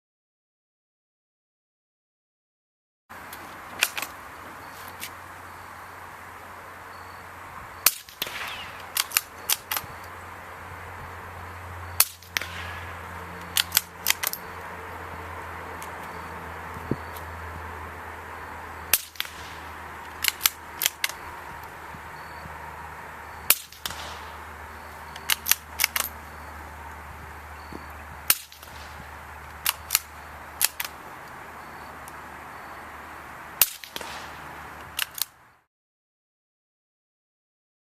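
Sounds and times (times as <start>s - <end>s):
suppressed rifle shots: 7.8s - 10.0s, 12.0s - 14.4s, 18.9s - 21.2s, 23.5s - 24.5s, 33.6s - 34.5s
small metallic clicks: 7.8s - 10.2s, 13.4s - 14.6s, 18.9s - 21.7s, 25.1s - 26.2s, 29.5s - 31.4s, 34.8s - 35.4s.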